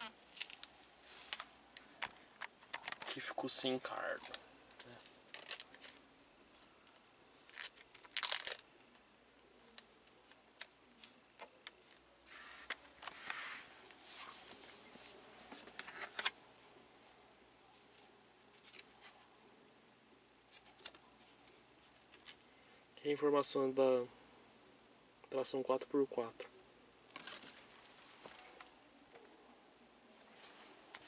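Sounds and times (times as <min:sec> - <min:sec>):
rustling handling noises: 0:00.0 - 0:09.0, 0:09.6 - 0:19.4, 0:27.1 - 0:28.8, 0:30.1 - 0:31.0.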